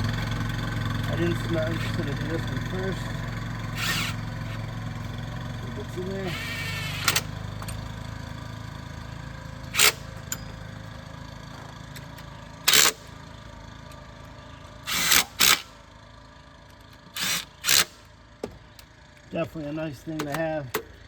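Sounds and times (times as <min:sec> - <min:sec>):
impact driver bursts: 0:01.4 - 0:04.8, 0:06.0 - 0:07.8, 0:09.7 - 0:10.5, 0:12.7 - 0:13.2, 0:14.8 - 0:15.8, 0:17.1 - 0:18.1.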